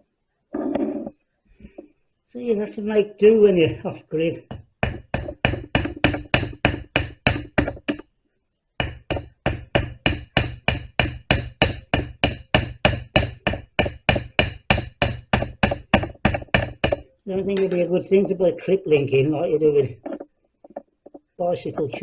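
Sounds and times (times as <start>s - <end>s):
hammer tapping on metal chain: 4.5s - 8.0s, 8.8s - 17.8s.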